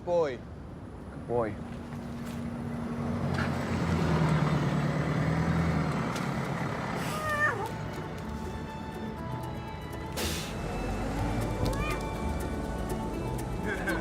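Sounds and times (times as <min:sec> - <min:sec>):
street traffic: 0:00.0 - 0:14.0
heavy vehicle engine running: 0:02.5 - 0:08.7, 0:09.6 - 0:14.0.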